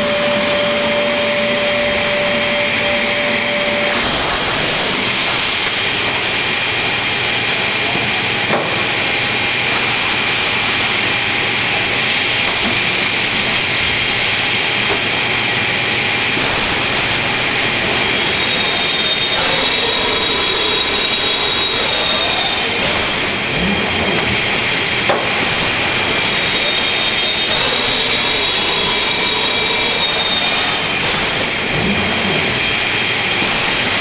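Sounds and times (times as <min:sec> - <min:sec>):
panel saw hiss and whine: 0:17.0 - 0:22.8, 0:24.5 - 0:31.1.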